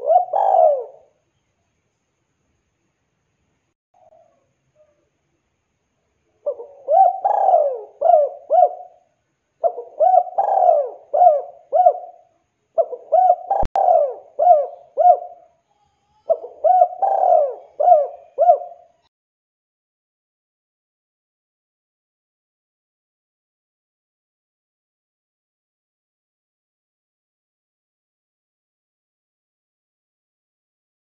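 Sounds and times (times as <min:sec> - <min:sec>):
dove cooing: 0:00.0 - 0:01.2, 0:06.4 - 0:09.0, 0:09.6 - 0:15.6, 0:16.2 - 0:19.1.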